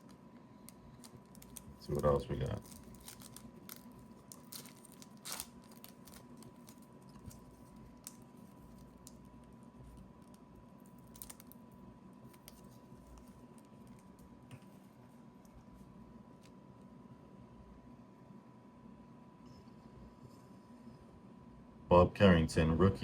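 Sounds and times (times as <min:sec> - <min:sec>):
cards and wrapper rustling: 0:00.0 - 0:11.6, 0:12.2 - 0:14.8.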